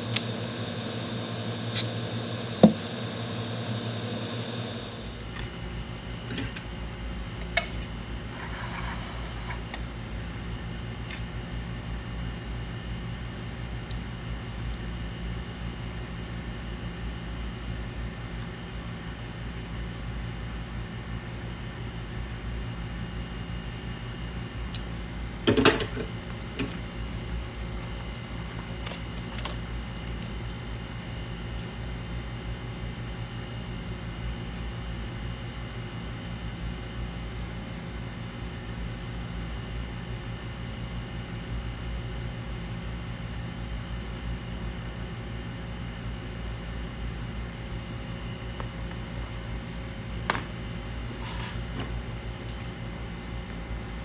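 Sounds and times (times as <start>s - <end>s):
hot air blower hissing: 0.0s - 11.6s
electrical hum and hiss: 0.0s - 38.7s, 44.0s - 54.0s.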